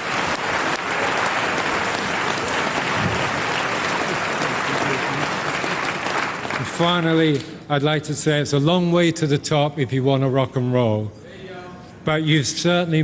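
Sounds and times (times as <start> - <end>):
audience applauding: 0.0 - 7.4.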